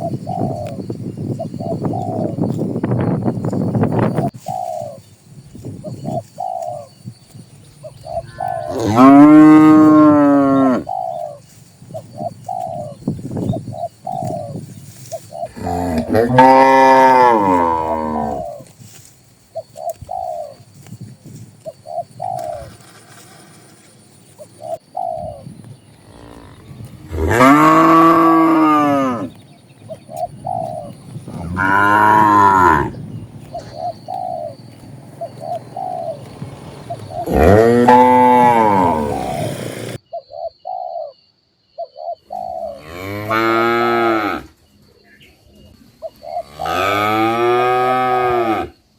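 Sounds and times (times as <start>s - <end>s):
doves cooing: 0.0s - 3.2s, 3.8s - 5.1s, 5.8s - 7.0s, 7.7s - 18.7s, 19.6s - 20.6s, 21.6s - 41.2s, 41.8s - 44.5s
cattle mooing: 8.6s - 10.8s, 15.6s - 18.5s, 26.1s - 29.3s, 31.3s - 33.0s, 36.1s - 39.8s.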